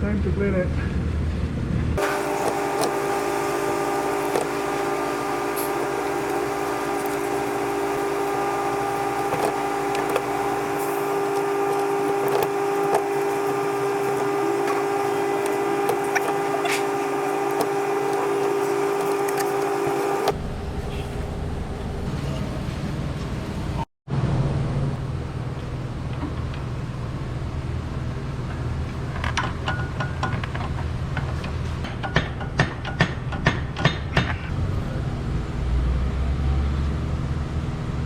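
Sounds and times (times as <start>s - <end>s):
power tool motor running: 2.0s - 20.4s.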